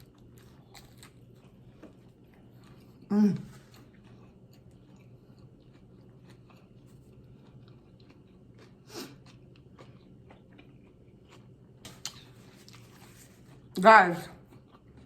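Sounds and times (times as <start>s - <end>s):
soft mouth chewing clicks: 3.7s - 13.7s, 14.4s - 15.0s.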